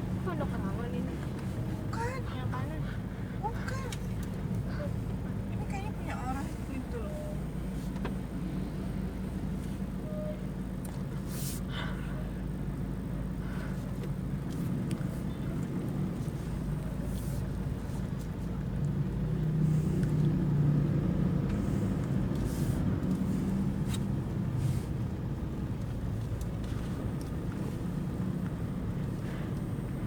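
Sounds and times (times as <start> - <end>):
car engine drone in cabin: 0.0 - 30.0.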